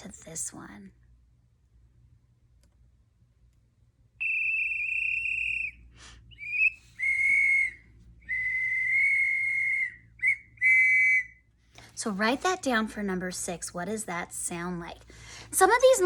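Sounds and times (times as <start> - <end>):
whistle blasts: 4.2 - 11.5.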